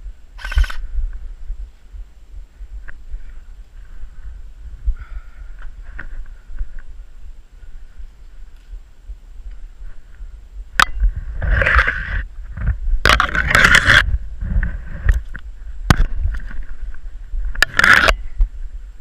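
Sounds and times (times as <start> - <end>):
sharp clicks: 0.4 - 0.8.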